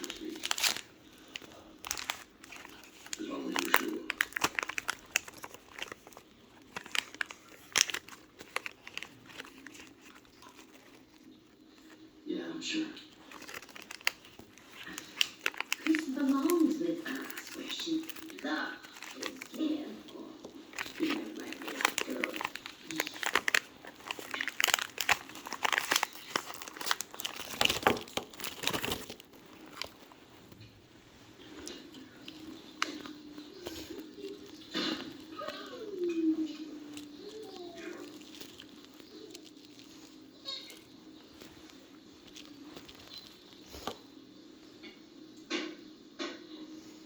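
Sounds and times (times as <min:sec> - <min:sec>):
snack packaging crinkling: 0:00.0 - 0:45.0.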